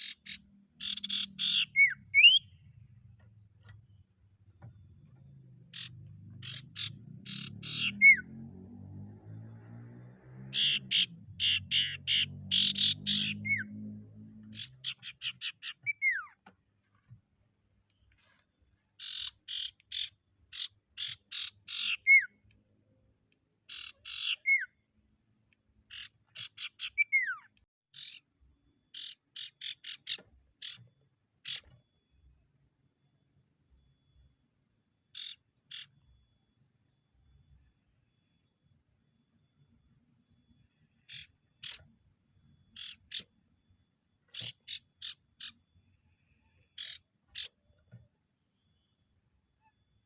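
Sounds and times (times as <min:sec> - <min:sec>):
bird singing chattering notes: 0:00.0 - 0:02.8, 0:05.2 - 0:08.4, 0:10.6 - 0:16.4, 0:19.0 - 0:22.4, 0:23.7 - 0:24.7, 0:25.9 - 0:28.2, 0:28.9 - 0:31.8, 0:42.7 - 0:43.4, 0:44.3 - 0:45.6.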